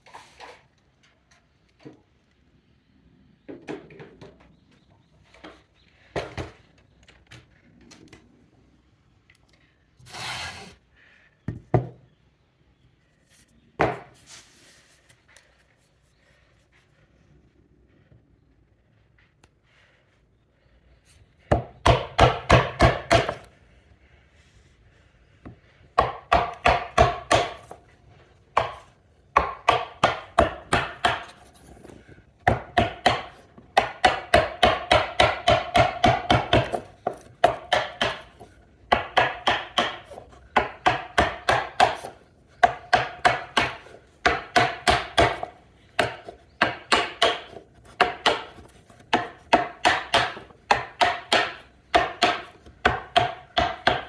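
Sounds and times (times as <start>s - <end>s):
hammer striking chisel into wood: 21.5s - 23.5s, 26.0s - 27.8s, 28.6s - 31.6s, 32.4s - 54.0s.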